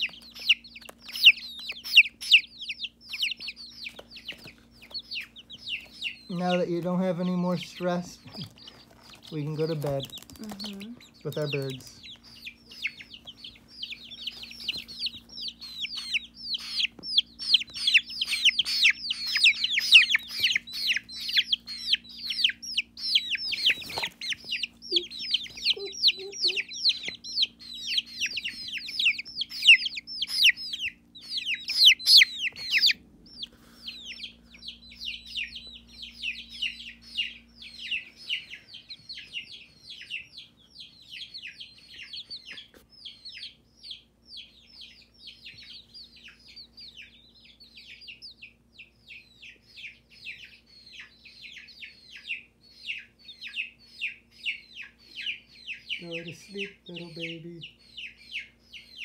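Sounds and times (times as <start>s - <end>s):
chicks peeping: 0.0s - 59.0s.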